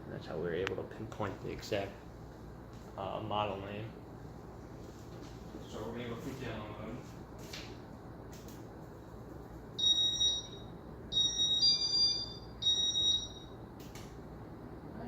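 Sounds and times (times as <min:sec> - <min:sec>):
high electronic beeps: 0:09.8 - 0:13.5.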